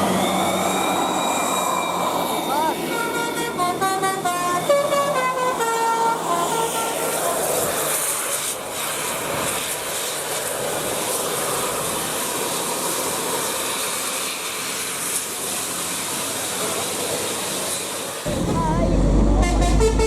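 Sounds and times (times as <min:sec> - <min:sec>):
bus engine and tyres passing: 0:00.0 - 0:20.0.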